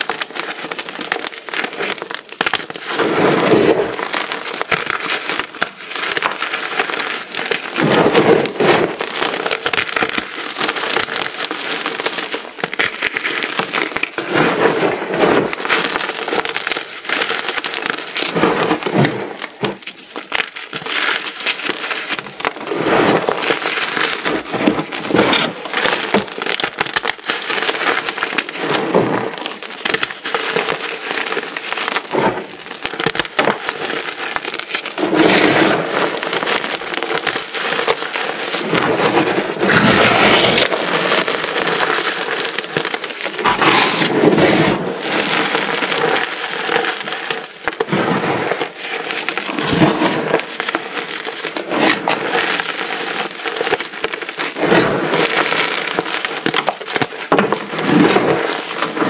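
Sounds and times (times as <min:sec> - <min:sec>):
chalk crunching and crackling: 0:00.0 - 0:59.0.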